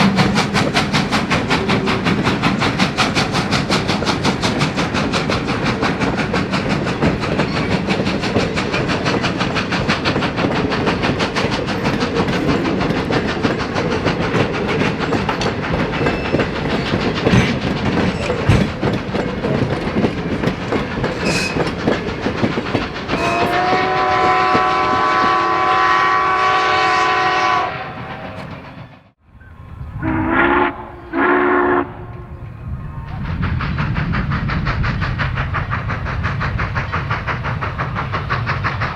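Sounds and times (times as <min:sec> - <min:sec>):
steam locomotive exhaust beating: 0:00.0 - 0:29.2, 0:29.8 - 0:38.9
steam whistle blast: 0:23.2 - 0:28.1, 0:30.0 - 0:32.0.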